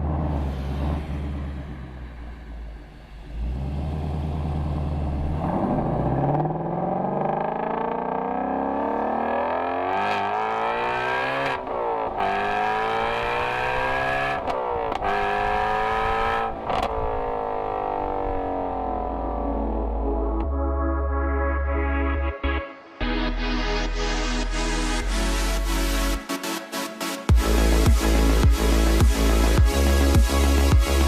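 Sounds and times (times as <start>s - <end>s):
car engine accelerating hard: 0.0s - 20.5s.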